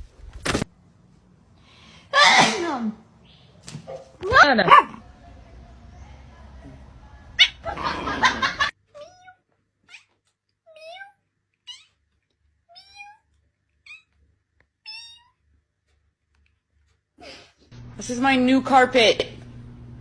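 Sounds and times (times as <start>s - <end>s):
cat meowing: 8.9s - 12.0s, 12.7s - 14.2s.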